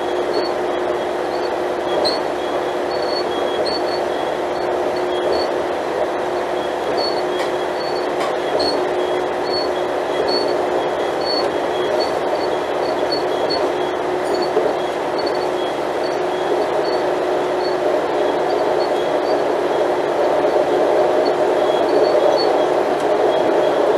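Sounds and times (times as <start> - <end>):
diesel train engine running: 0.0 - 23.9
short high squeaks: 1.9 - 2.2, 6.9 - 8.8.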